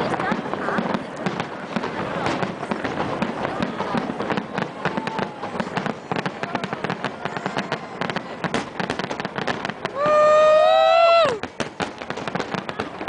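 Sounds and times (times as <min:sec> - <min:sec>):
fireworks crackling and popping: 0:00.0 - 0:13.0.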